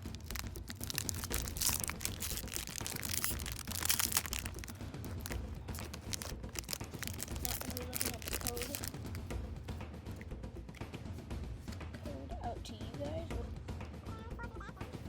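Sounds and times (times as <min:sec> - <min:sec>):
plastic and foil wrapper crinkling: 0:00.0 - 0:09.3.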